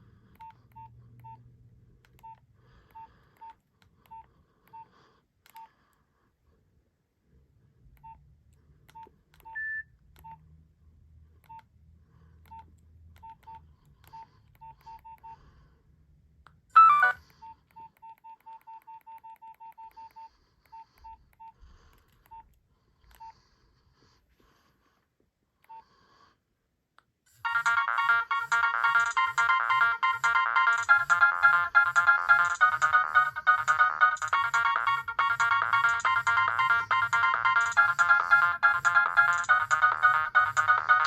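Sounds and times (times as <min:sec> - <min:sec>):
phone keypad beeps: 0:02.2 - 0:04.9, 0:09.0 - 0:10.4, 0:16.8 - 0:21.6, 0:27.5 - 0:41.0
brief electronic tone: 0:16.8 - 0:17.2
phone ringtone: 0:16.8 - 0:17.3, 0:27.4 - 0:41.0.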